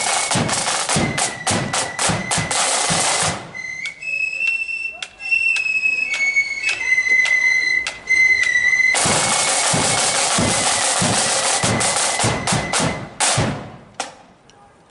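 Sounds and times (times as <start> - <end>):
drum roll: 0.0 - 3.6, 8.9 - 13.8
cymbals: 0.0 - 13.8
flutes holding high note: 3.4 - 13.1.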